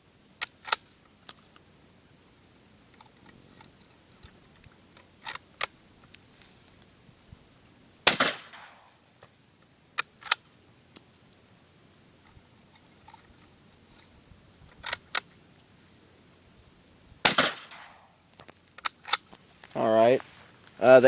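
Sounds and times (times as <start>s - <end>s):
shotgun bolt clicks: 0.4s - 0.8s
loud gunshot: 8.0s - 8.8s, 17.2s - 18.1s.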